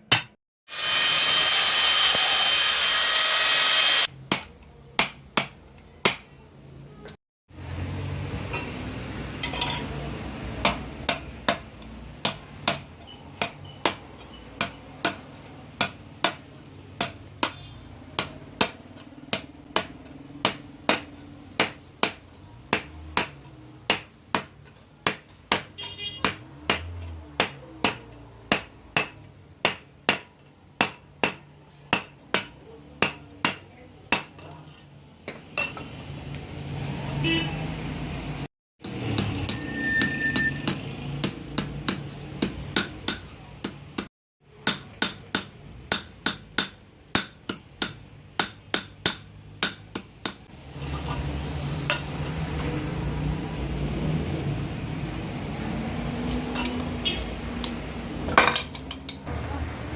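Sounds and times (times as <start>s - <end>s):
hammer striking copper sheet: 0.0s - 6.3s.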